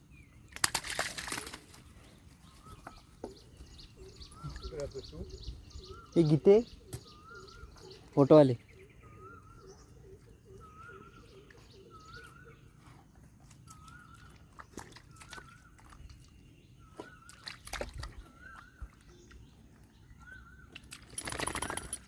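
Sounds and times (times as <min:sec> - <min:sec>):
bird calling: 0:01.2 - 0:13.0.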